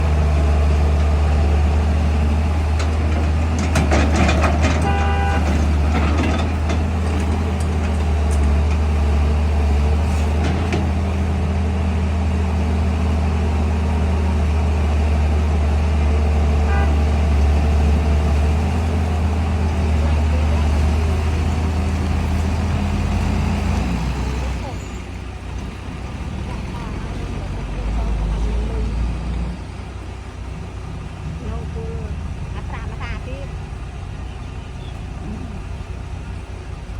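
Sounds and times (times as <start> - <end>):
excavator diesel engine running: 0.0 - 36.9
metal clanks: 2.8 - 8.9.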